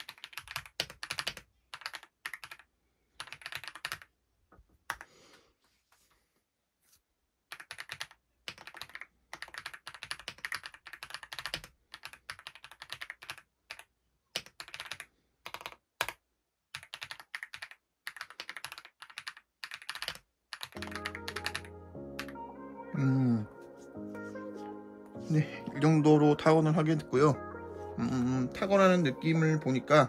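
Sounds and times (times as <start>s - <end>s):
mechanical keyboard typing: 0.0s - 4.1s, 7.5s - 22.3s.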